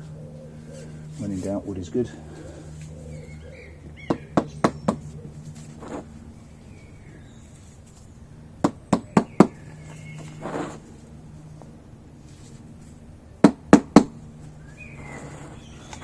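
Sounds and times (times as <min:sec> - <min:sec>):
faint bird chirps: 0:14.6 - 0:16.0.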